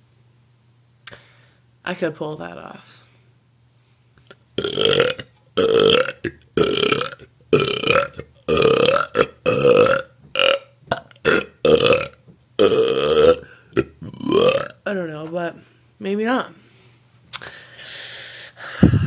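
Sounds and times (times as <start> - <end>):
woman burping: 4.6 - 14.8.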